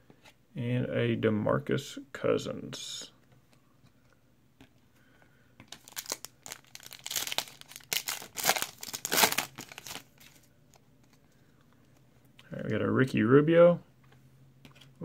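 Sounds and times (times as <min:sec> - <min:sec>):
wrapper tearing and crinkling: 0:05.7 - 0:10.4.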